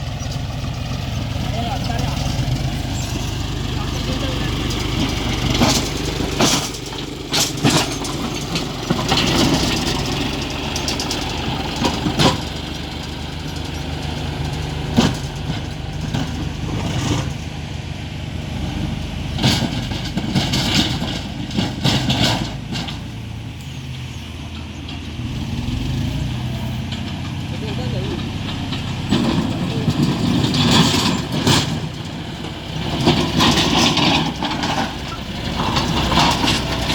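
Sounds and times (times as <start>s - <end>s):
tractor diesel engine running: 0.0s - 36.9s
sharp clattering: 0.2s - 17.6s, 26.9s - 36.9s.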